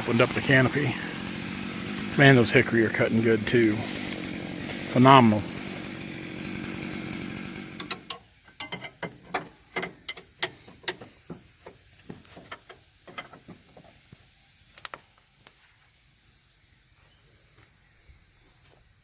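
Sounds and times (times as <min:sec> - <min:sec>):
chainsaw engine running: 0:00.0 - 0:13.6
sharp snaps and clicks: 0:14.7 - 0:15.6.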